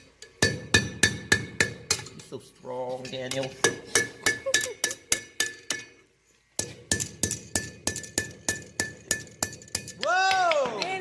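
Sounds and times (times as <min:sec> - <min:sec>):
hammer striking steel on anvil: 0:00.4 - 0:02.2, 0:03.3 - 0:06.0, 0:06.6 - 0:10.0.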